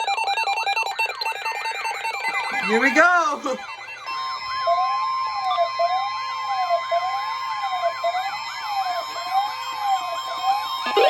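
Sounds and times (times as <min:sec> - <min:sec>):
wailing siren: 0:00.0 - 0:11.0
steady alert tone: 0:02.5 - 0:03.8.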